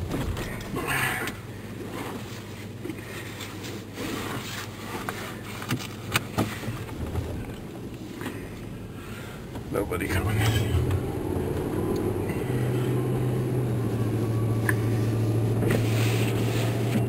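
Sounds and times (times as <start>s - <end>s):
vehicle engine running: 4.4s - 17.0s.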